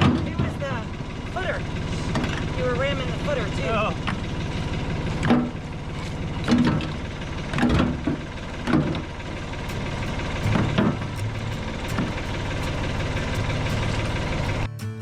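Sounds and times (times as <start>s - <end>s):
tractor engine idling: 0.0s - 14.9s
heavy clunks: 5.2s - 5.7s, 6.4s - 14.7s.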